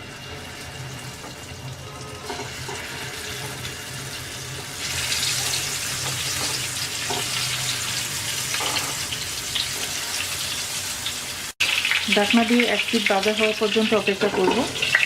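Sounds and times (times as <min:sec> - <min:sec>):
eggplant sizzling in hot oil: 0:00.0 - 0:15.0.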